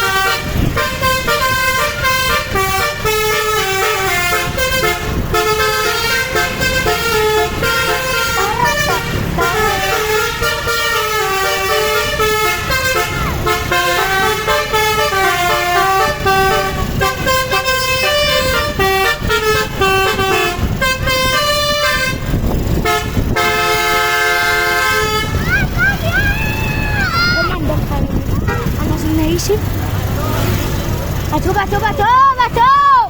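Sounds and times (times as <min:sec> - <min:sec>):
multi-tone musical air horn: 0:00.0 - 0:25.5.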